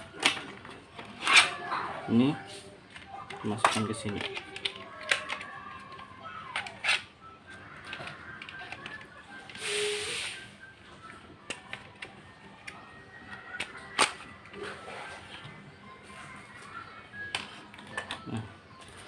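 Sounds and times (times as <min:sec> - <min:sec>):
faint background music: 0:00.0 - 0:19.0
short hiss: 0:09.6 - 0:10.5.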